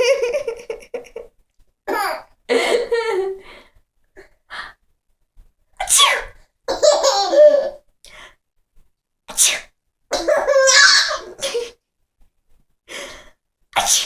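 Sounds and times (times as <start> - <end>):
baby laughing: 1.9 - 2.3, 6.7 - 7.8, 10.1 - 11.7
woman sneezing: 5.8 - 6.4.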